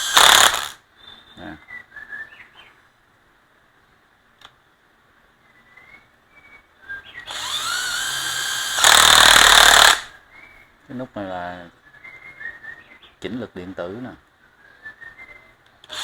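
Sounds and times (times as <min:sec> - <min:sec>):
cordless drill motor whining: 0:00.0 - 0:00.8, 0:07.3 - 0:10.1.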